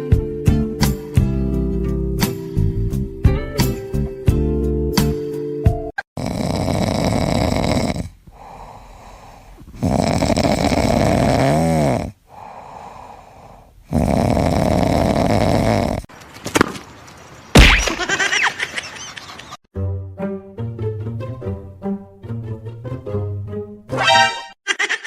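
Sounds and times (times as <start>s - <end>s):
pet snoring: 6.2s - 16.1s.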